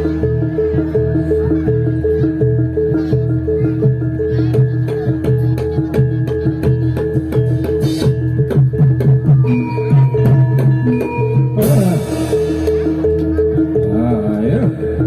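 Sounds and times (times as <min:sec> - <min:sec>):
metallophone notes: 0:00.0 - 0:15.0
drum strokes: 0:04.6 - 0:14.7.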